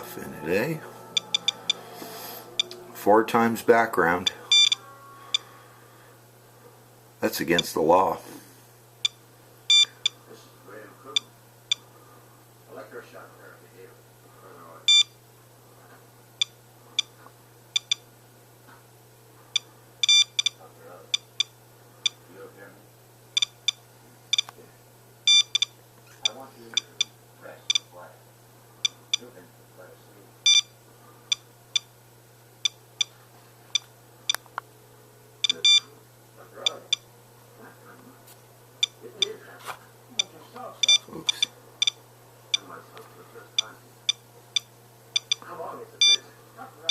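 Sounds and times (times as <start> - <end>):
geiger counter beeping: 0.0 - 5.5, 9.7 - 10.0, 14.9 - 15.1, 19.6 - 20.6, 25.3 - 25.8, 30.5 - 30.7, 35.4 - 35.9, 40.2 - 42.0.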